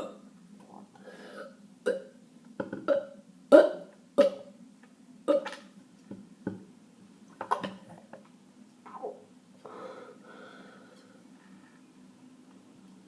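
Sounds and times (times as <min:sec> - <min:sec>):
person burping and hiccupping: 0:00.0 - 0:00.8, 0:01.4 - 0:04.5, 0:05.3 - 0:05.7, 0:07.4 - 0:07.9
drawn-out breathy sound: 0:09.6 - 0:11.8.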